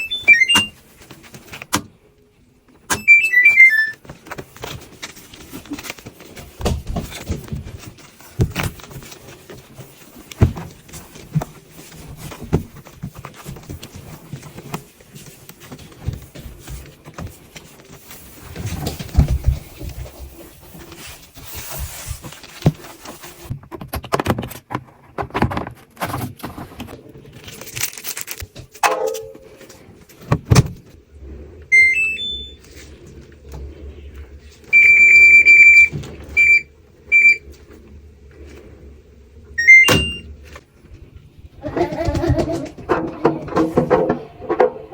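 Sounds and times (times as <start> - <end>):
washing machine beeps: 0.0 - 0.8, 2.9 - 4.0, 31.7 - 32.6, 34.7 - 37.4, 39.6 - 40.3.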